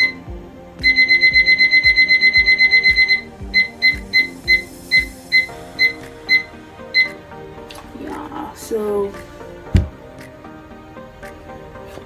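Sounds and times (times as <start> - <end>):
music with steady beat: 0.0 - 12.0
electronic timer beeping: 0.8 - 7.2.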